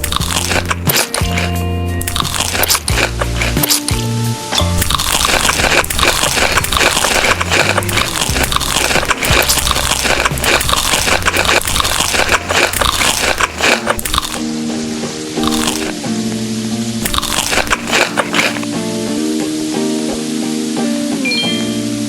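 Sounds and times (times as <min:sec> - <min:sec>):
crunchy chewing of food: 0:00.0 - 0:14.5, 0:15.4 - 0:16.0, 0:17.0 - 0:18.7.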